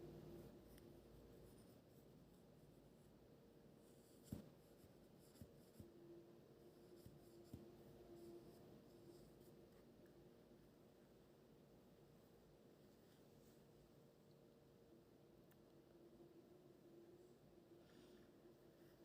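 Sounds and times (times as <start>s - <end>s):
pen scratching on paper: 3.8s - 5.9s.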